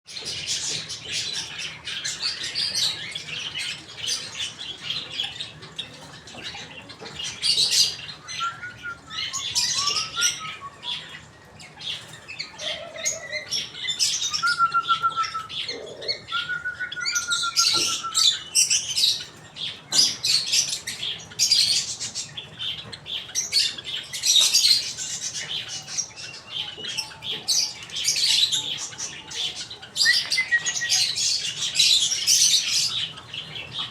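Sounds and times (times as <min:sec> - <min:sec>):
lovebirds chirping and squeaking: 0:00.1 - 0:33.9
low whistled bird notes: 0:14.3 - 0:18.4.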